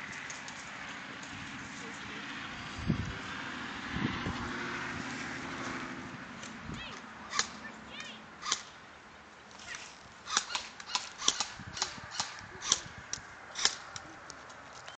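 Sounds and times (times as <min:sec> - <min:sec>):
airsoft guns firing: 0:07.3 - 0:07.6, 0:10.3 - 0:12.9, 0:13.6 - 0:14.0.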